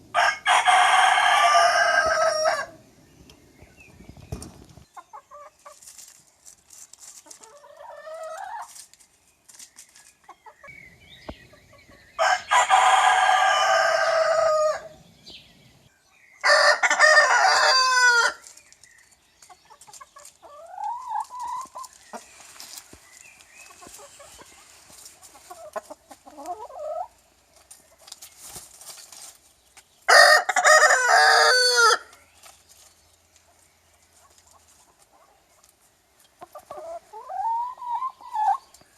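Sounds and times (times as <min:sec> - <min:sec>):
chicken calls: 0:00.0 - 0:38.9
rooster crowing: 0:00.1 - 0:02.7, 0:12.2 - 0:14.9, 0:16.4 - 0:18.4, 0:30.1 - 0:32.1.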